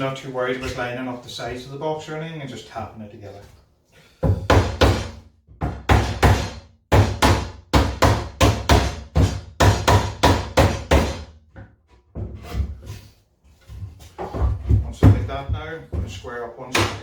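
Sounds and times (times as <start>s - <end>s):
hammer knocking wood: 4.2s - 11.3s, 16.7s - 17.0s.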